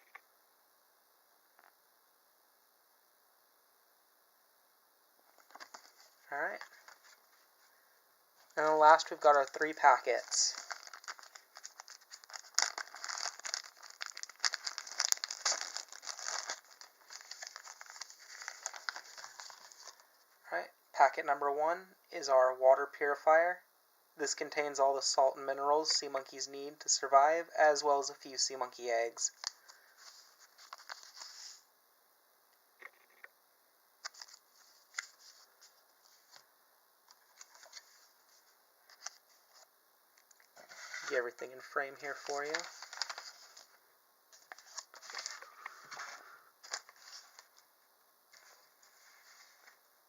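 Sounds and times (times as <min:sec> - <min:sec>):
paper sachets crinkling: 0:05.3 - 0:07.4, 0:08.5 - 0:20.0, 0:29.3 - 0:31.6, 0:34.0 - 0:36.4, 0:42.0 - 0:47.6.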